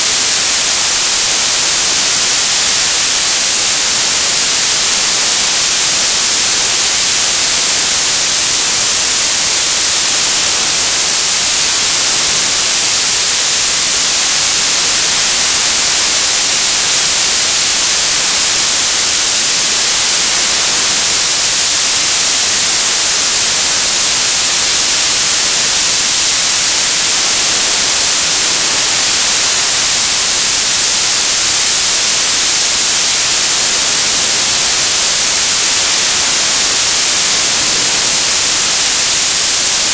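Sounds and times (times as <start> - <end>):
television static hiss: 0.0 - 39.9.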